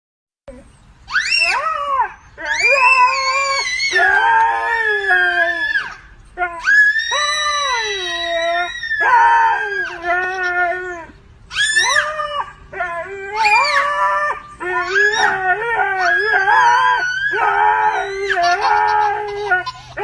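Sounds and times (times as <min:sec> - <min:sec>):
dog howling: 0:01.1 - 0:20.0.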